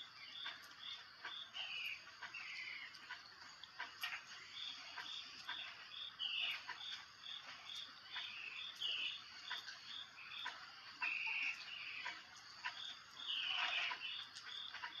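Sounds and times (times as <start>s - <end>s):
high animal pips: 9.0s - 15.0s.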